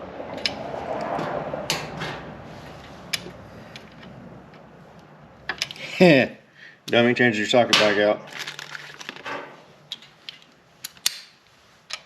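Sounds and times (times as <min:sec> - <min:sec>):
rustling handling noise: 0:08.2 - 0:12.0.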